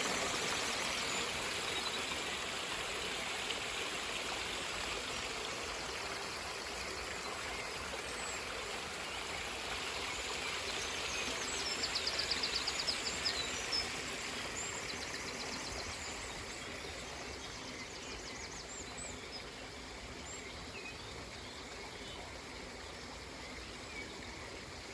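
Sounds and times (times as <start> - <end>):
river water rushing: 0.0 - 12.0
birds singing: 10.1 - 22.3.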